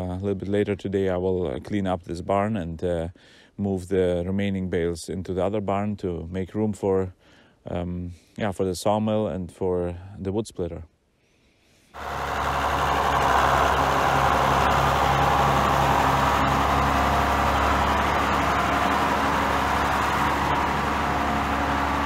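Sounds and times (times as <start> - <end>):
tractor engine running: 12.0 - 22.0.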